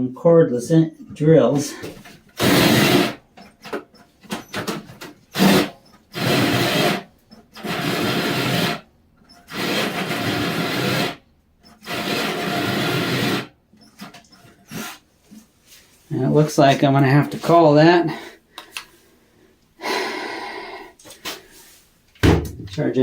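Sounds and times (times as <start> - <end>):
drill with hole saw cutting wood: 1.8 - 15.0.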